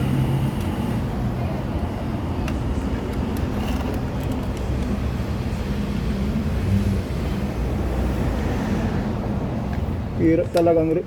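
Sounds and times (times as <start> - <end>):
motor vehicle rumbling: 0.0 - 11.0.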